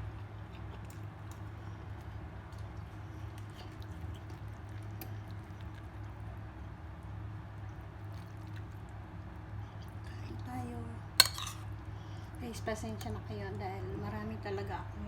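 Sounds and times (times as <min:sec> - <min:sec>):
person chewing food: 0:00.0 - 0:06.3, 0:07.6 - 0:09.0
steady low hum: 0:00.0 - 0:15.0.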